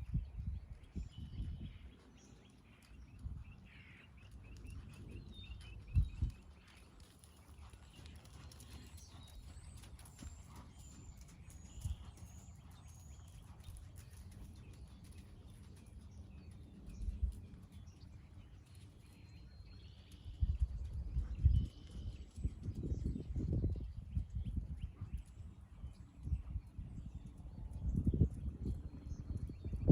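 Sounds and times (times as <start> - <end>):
horse hoofbeats: 4.6 - 18.0.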